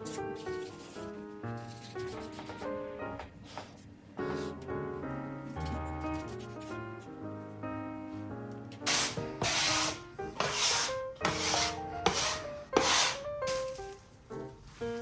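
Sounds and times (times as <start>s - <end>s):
background music: 0.0s - 3.4s, 4.2s - 15.0s
rasping back-and-forth strokes: 8.9s - 13.2s.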